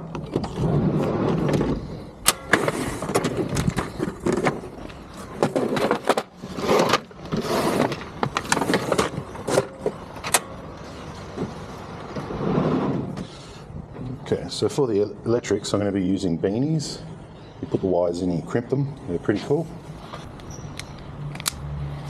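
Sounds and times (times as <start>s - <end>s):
tools rustling and scraping wires: 0.2s - 13.4s
sharp clicks: 20.4s - 21.7s.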